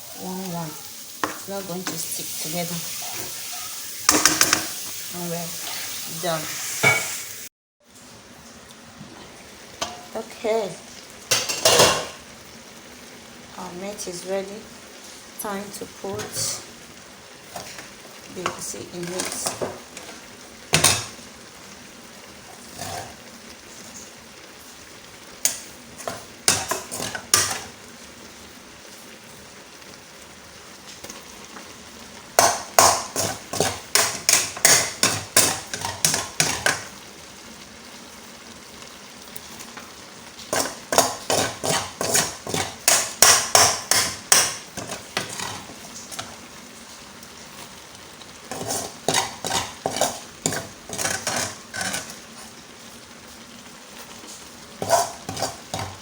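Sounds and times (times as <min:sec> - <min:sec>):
faint steady sizzle: 0:00.0 - 0:56.0
spoon scraping in cooking pot: 0:22.6 - 0:23.2, 0:40.5 - 0:46.2, 0:48.5 - 0:52.2, 0:54.8 - 0:56.0.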